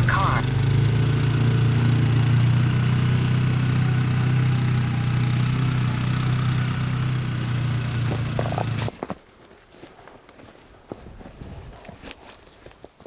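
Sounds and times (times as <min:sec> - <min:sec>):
car engine running inside car: 0:00.0 - 0:00.8, 0:07.4 - 0:08.9.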